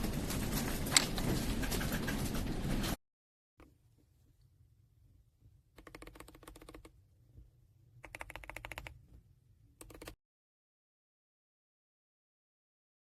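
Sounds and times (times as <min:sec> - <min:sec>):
mechanical keyboard typing: 0:05.8 - 0:07.0, 0:08.0 - 0:09.0, 0:09.8 - 0:10.2.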